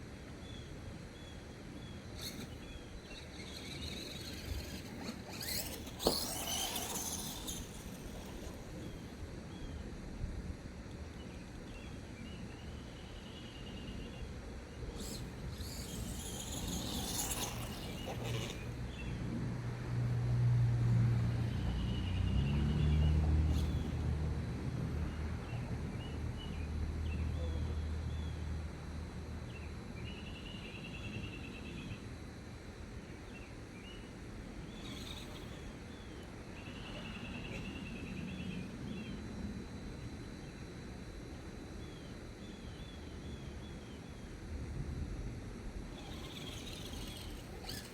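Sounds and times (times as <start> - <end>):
birds chirping: 0.4 - 9.8, 11.0 - 19.2, 33.0 - 39.8, 46.0 - 47.9.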